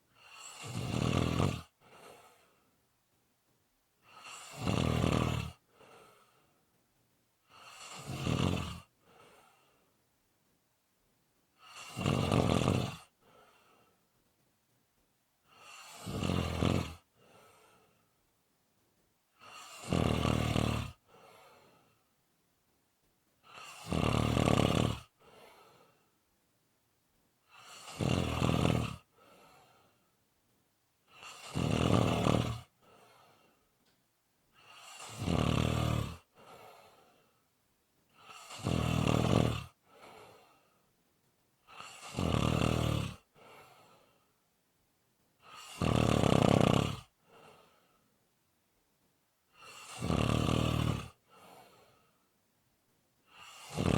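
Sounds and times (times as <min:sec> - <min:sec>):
person snoring: 0:00.2 - 0:02.6, 0:04.0 - 0:06.2, 0:07.5 - 0:09.6, 0:11.6 - 0:13.7, 0:15.5 - 0:17.8, 0:19.4 - 0:21.8, 0:23.4 - 0:25.9, 0:27.5 - 0:29.9, 0:31.1 - 0:33.5, 0:34.6 - 0:37.2, 0:38.2 - 0:40.6, 0:41.7 - 0:44.1, 0:45.4 - 0:47.8, 0:49.6 - 0:51.8, 0:53.3 - 0:53.9.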